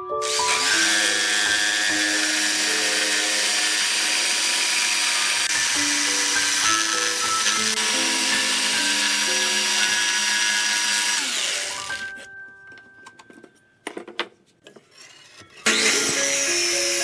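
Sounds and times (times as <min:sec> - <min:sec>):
background music: 0:00.0 - 0:14.0, 0:15.6 - 0:17.0
electric power tool running: 0:00.2 - 0:12.2, 0:15.6 - 0:17.0.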